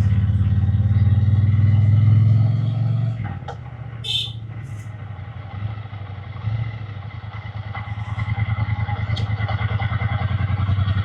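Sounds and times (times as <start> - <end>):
motorcycle engine running: 3.6 - 11.0.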